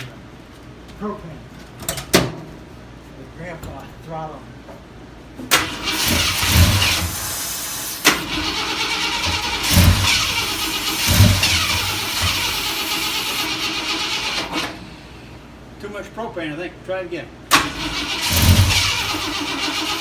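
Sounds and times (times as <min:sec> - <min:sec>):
engine cranking and surging: 0:05.5 - 0:07.4, 0:08.0 - 0:14.8, 0:17.5 - 0:20.0.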